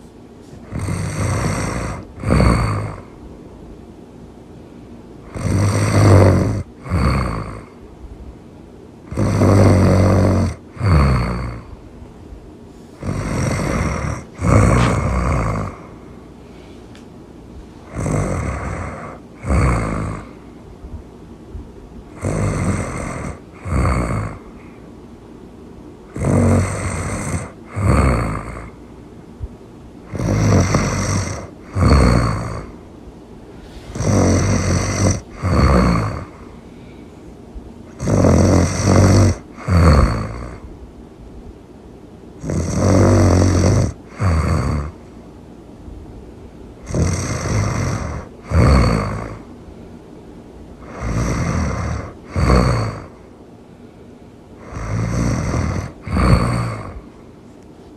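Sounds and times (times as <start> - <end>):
person snoring loudly: 0.6 - 3.2, 5.2 - 7.8, 9.1 - 11.8, 13.0 - 16.1, 17.8 - 20.5, 22.1 - 24.8, 26.1 - 28.8, 30.0 - 32.8, 33.6 - 36.6, 37.9 - 40.6, 42.4 - 45.0, 46.8 - 49.5, 50.8 - 53.3, 54.6 - 57.1.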